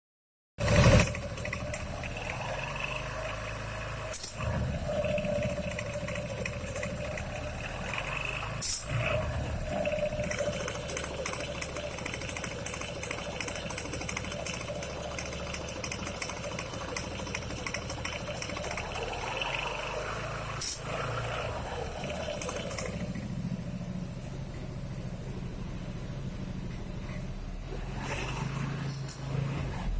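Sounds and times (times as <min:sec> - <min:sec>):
scooter engine running: 0:00.6 - 0:29.9
sharp click: 0:08.6 - 0:09.0.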